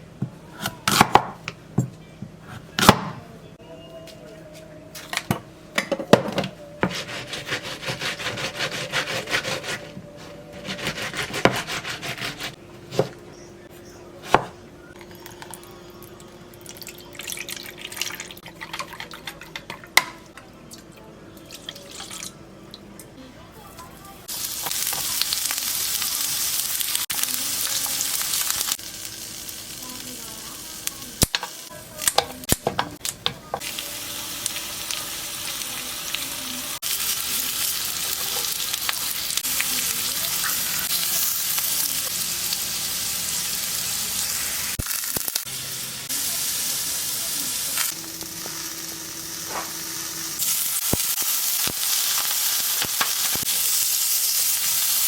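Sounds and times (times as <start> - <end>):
food sizzling in frying pan: 24.2 - 55.0.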